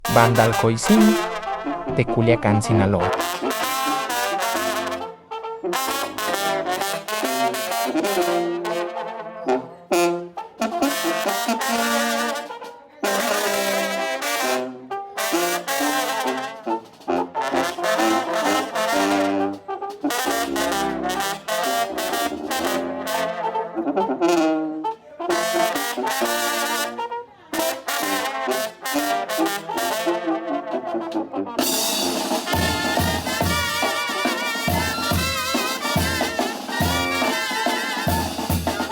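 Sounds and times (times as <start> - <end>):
low bass notes: 0.0 - 3.1
trumpets and trombones playing: 0.0 - 38.9.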